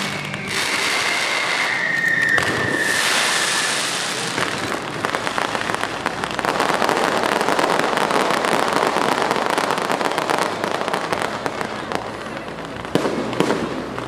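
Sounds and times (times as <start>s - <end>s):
firework whistle falling: 0.0s - 5.9s
firework crackling: 0.0s - 14.0s.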